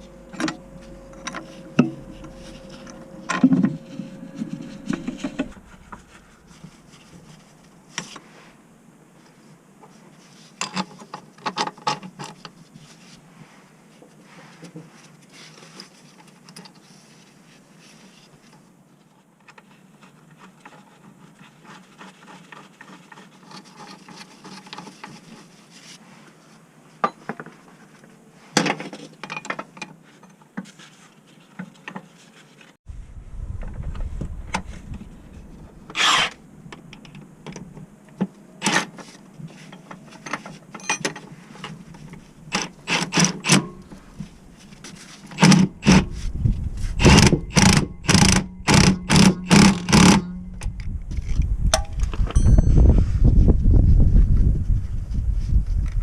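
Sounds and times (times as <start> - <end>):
tools rubbing and scraping: 0.0 - 8.6, 35.3 - 36.4.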